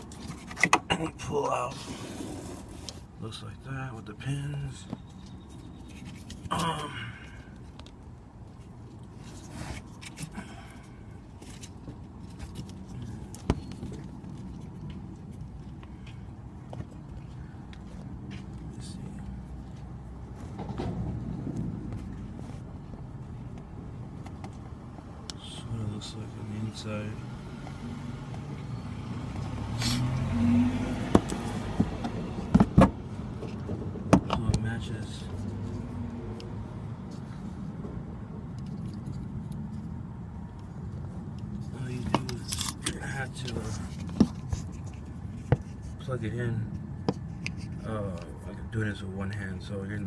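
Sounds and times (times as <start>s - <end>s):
vehicle hum: 0.0s - 50.0s
plastic connector clicks and scraping: 41.3s - 45.9s, 46.7s - 48.3s.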